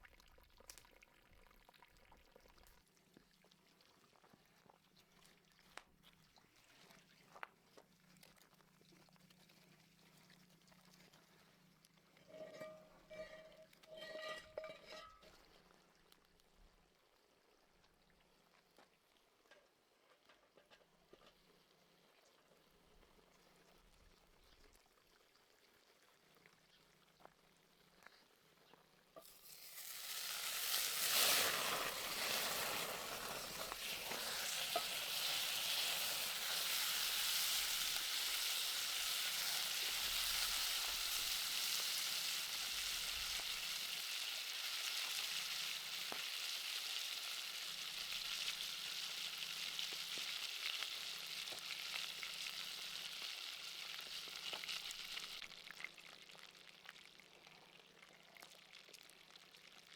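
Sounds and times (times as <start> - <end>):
food sizzling: 12.2 - 15.2, 29.2 - 57.0.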